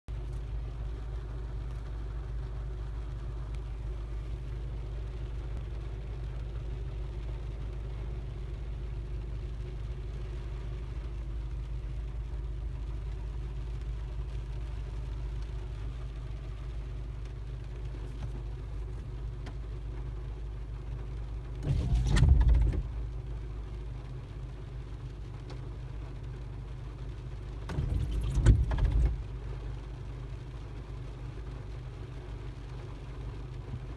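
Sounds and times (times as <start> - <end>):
car low drone: 21.4 - 24.1, 27.5 - 30.1
wiper blades squeaking on glass: 21.6 - 23.1, 27.7 - 29.3.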